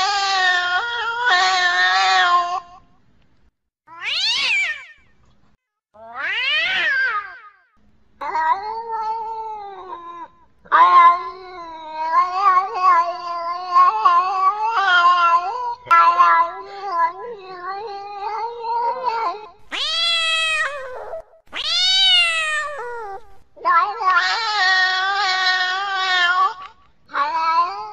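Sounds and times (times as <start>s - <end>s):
cat yowling: 3.9s - 5.0s, 6.0s - 7.6s, 8.2s - 27.9s.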